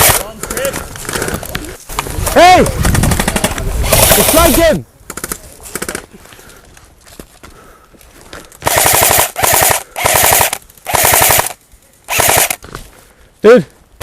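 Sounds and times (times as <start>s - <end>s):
airsoft gun firing bursts: 0.0s - 0.2s, 2.9s - 6.0s, 8.6s - 12.6s.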